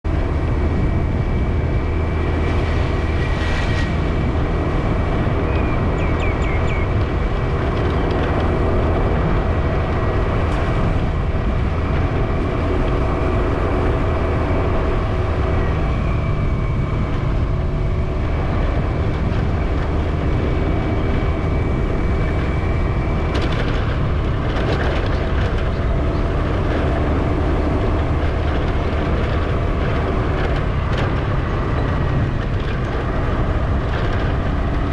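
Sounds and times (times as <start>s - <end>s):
vehicle road and engine noise: 0.0s - 34.9s
clicks and rattles: 23.3s - 27.0s.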